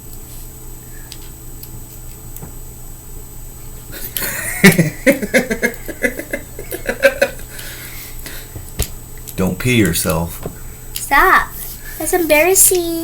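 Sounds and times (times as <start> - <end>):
person laughing loudly: 4.0 - 7.5.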